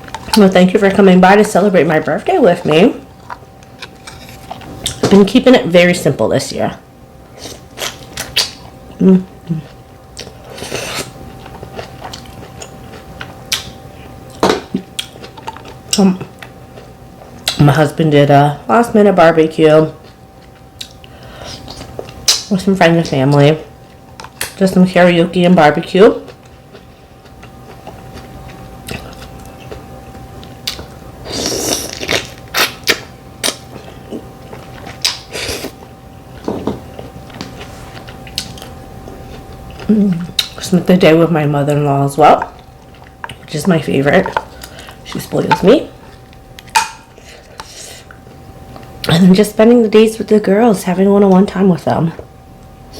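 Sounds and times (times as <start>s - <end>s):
faint steady hum: 0.0s - 52.9s
slurping or chewing: 10.2s - 13.1s, 35.3s - 35.8s.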